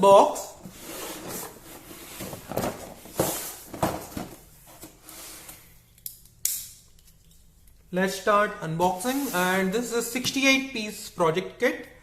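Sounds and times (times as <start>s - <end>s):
objects rustling: 0.6s - 5.7s.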